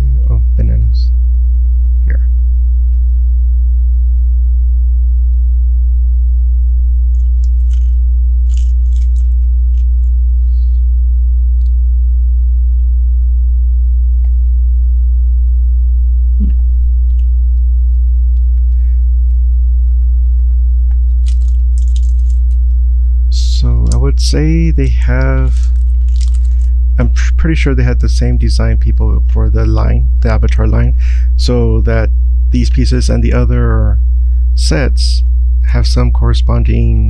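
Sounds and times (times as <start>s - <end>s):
electrical mains hum: 0.0s - 37.0s
plastic toy bricks rattling: 21.2s - 22.5s.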